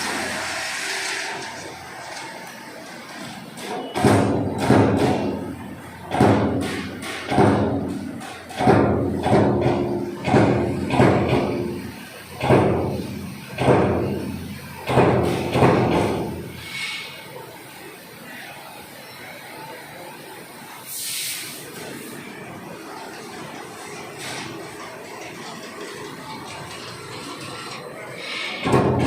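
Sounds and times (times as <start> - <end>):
punch press striking sheet metal: 3.6 - 17.1, 28.4 - 29.0.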